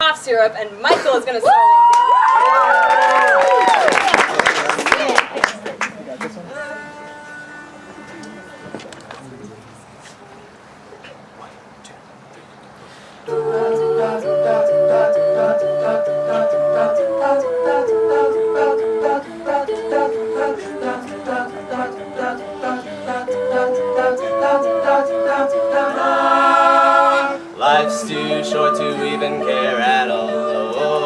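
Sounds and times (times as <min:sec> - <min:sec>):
a cappella group singing: 0:06.7 - 0:08.7, 0:13.2 - 0:31.0.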